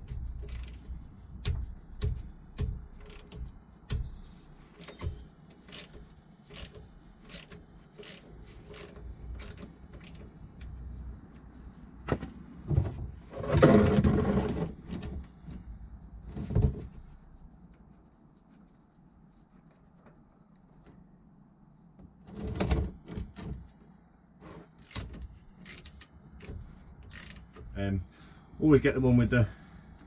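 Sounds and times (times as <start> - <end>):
hand tools clicking and knocking: 0.0 - 10.7, 24.8 - 27.8.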